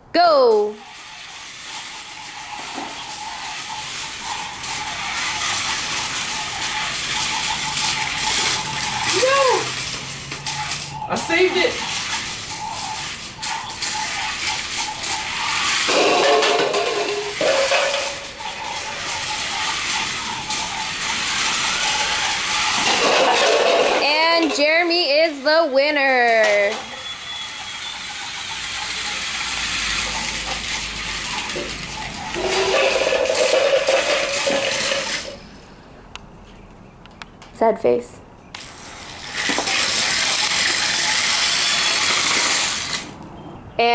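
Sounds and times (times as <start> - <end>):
toy car motors whirring: 0.4 - 35.5, 38.5 - 43.2
plastic rattling: 30.0 - 35.4.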